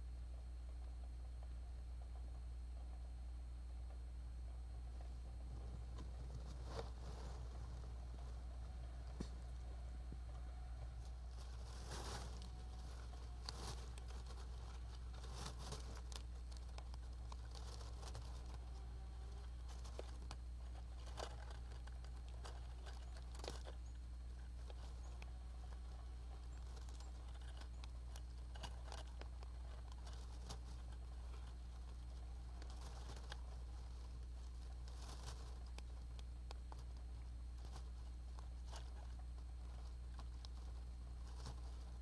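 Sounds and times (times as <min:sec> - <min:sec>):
low electrical hum: 0:00.0 - 0:42.0
animal rustling and scratching: 0:04.9 - 0:42.0.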